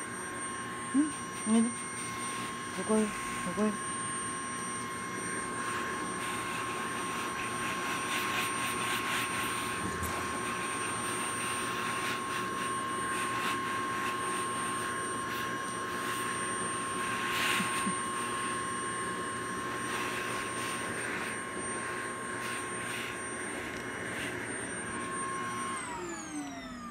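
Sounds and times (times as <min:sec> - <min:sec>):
vacuum cleaner whine: 0:00.0 - 0:26.9.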